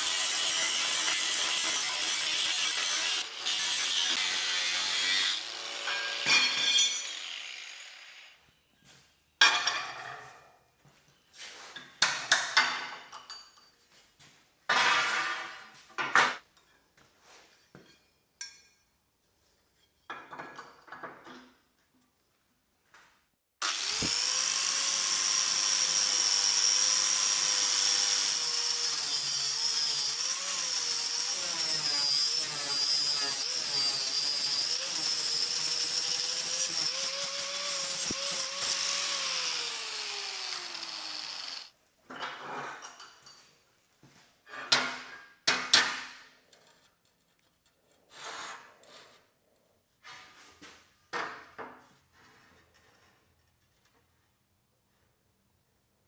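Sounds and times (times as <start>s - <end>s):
electric power tool whining: 0.0s - 8.4s, 23.6s - 41.7s.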